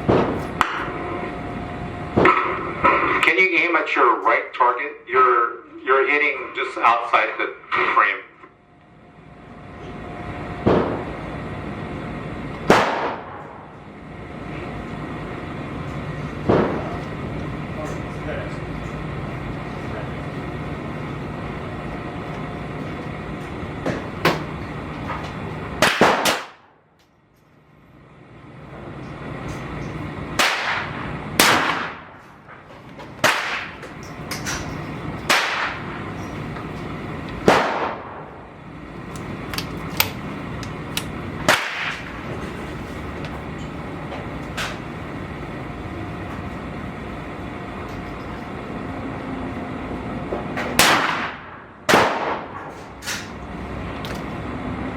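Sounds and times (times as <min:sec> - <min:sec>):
steady background hum: 0:00.0 - 0:54.9
shotgun shots: 0:12.7 - 0:13.6, 0:25.8 - 0:26.6, 0:30.4 - 0:32.2, 0:33.2 - 0:33.8, 0:35.3 - 0:35.8, 0:37.4 - 0:38.2, 0:41.5 - 0:42.0, 0:50.8 - 0:52.6.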